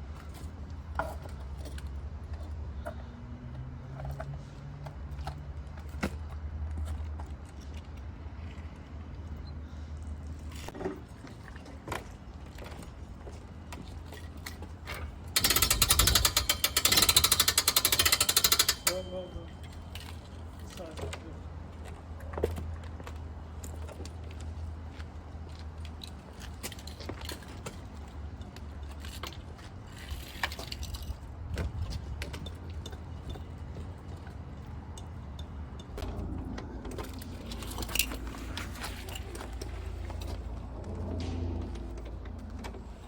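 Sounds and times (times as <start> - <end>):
tools clicking and clinking: 14.2 - 21.2, 31.8 - 43.0.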